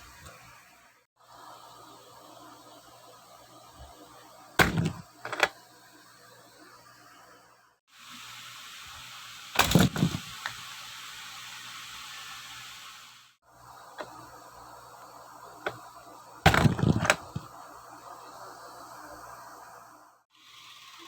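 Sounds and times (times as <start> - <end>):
background hiss: 0.0 - 21.0
plastic toy truck knocking: 4.6 - 5.5, 16.5 - 17.5.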